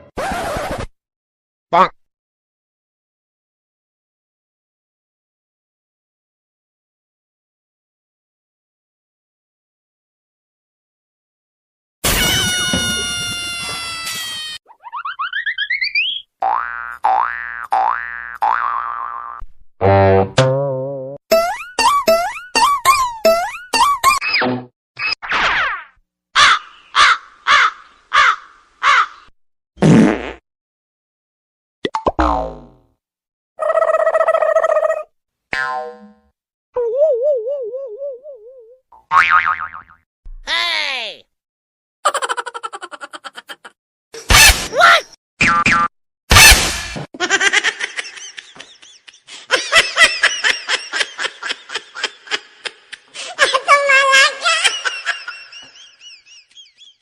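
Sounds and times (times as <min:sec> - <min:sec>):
fart sound effect: 0:19.8 - 0:21.4, 0:29.8 - 0:30.4
comedy falling pitch sound: 0:19.8 - 0:24.4, 0:36.8 - 0:38.8
crow cawing: 0:26.4 - 0:29.3
person laughing: 0:42.1 - 0:43.8, 0:47.2 - 0:57.0.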